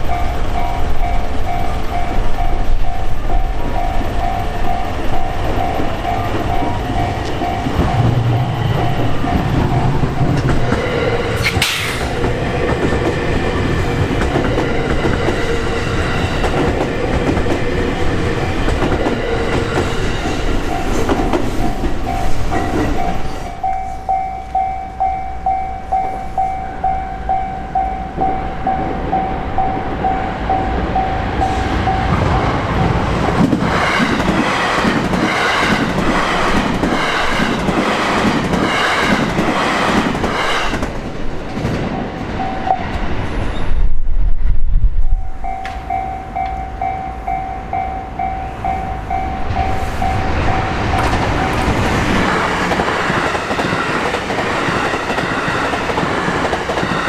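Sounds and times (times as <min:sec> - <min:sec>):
railroad crossing bell dinging: 0:00.0 - 0:11.6, 0:13.9 - 0:32.3, 0:41.8 - 0:43.2, 0:45.0 - 0:57.0
train rumbling and wheel clatter: 0:00.0 - 0:57.0.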